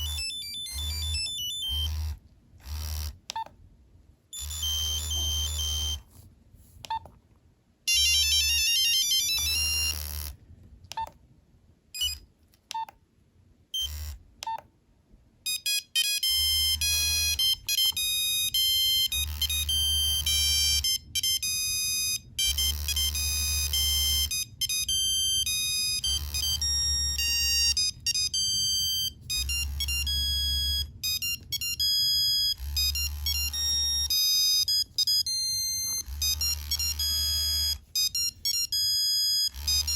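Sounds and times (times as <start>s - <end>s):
phone ringtone beeps: 0.0s - 3.5s, 4.4s - 6.1s, 7.9s - 10.3s, 12.0s - 12.2s, 13.8s - 14.1s, 15.5s - 39.9s
short beeps: 4.4s - 6.0s
low buzz pulsing: 16.3s - 39.9s.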